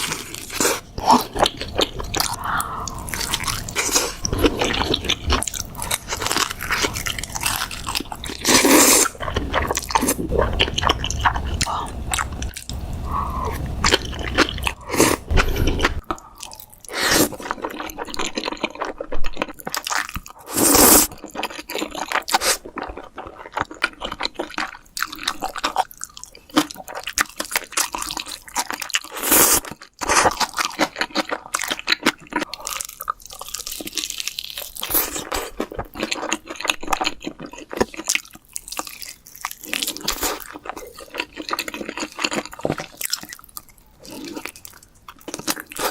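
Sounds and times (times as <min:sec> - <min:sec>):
fried chicken crunching: 0:00.0 - 0:45.9
low rumble: 0:10.2 - 0:16.0.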